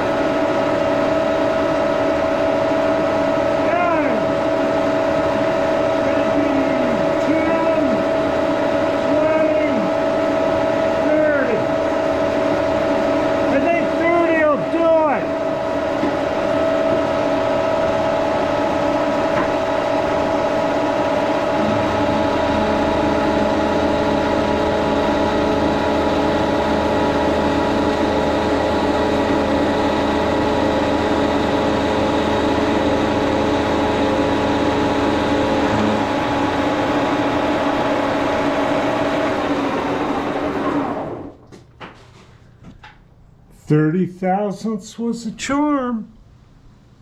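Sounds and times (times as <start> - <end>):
milling machine cutter whine: 0.0 - 41.4
deep hum: 15.2 - 40.4.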